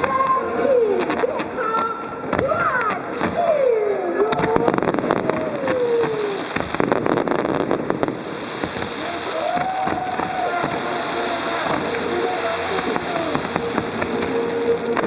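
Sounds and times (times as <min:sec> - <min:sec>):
fireworks crackling: 0:00.0 - 0:03.6, 0:04.2 - 0:15.0
falling gliding tones: 0:03.4 - 0:15.0.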